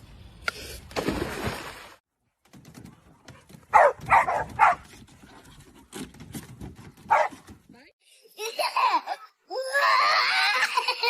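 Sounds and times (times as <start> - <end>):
dog barking: 3.7 - 4.8, 7.1 - 7.4.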